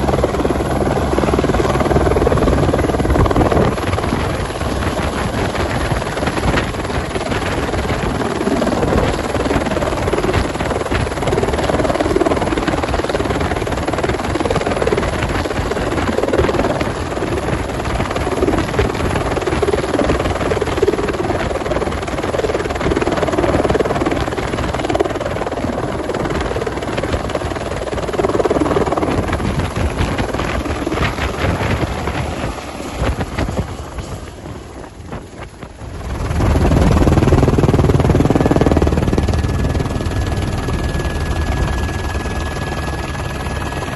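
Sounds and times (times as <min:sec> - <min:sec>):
helicopter rotor and engine: 0:00.0 - 0:43.9.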